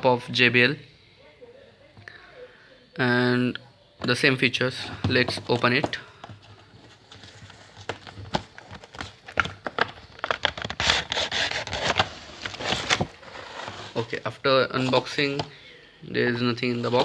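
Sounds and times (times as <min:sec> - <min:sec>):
packaging scraping and crinkling: 0:05.0 - 0:15.5, 0:16.6 - 0:17.0.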